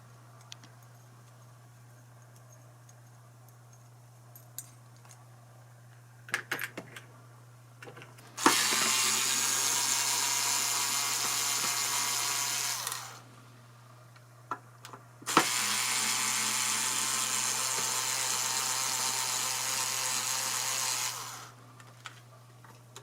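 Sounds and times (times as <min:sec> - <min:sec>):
electric drill motor running: 0:08.4 - 0:13.3, 0:15.3 - 0:21.6.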